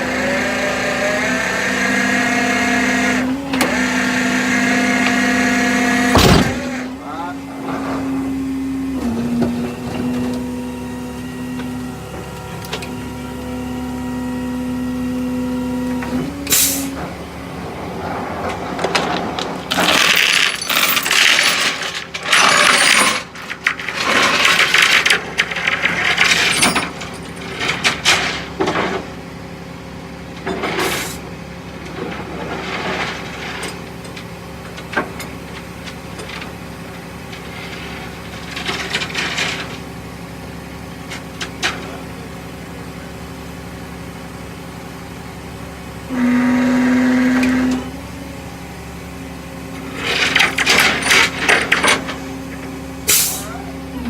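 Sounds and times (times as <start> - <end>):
steady mechanical whine: 0.0 - 29.4
metal clanks and rattles: 18.0 - 29.1, 50.0 - 52.2.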